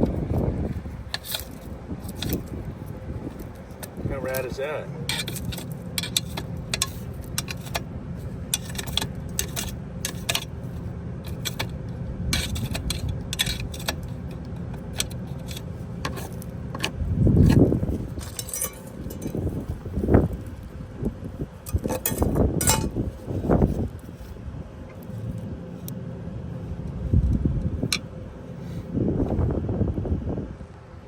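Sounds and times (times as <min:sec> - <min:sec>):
low rumble: 0:00.0 - 0:30.7
equipment humming: 0:00.0 - 0:31.0
metallic clicks and clinks: 0:05.1 - 0:07.8, 0:18.2 - 0:19.4.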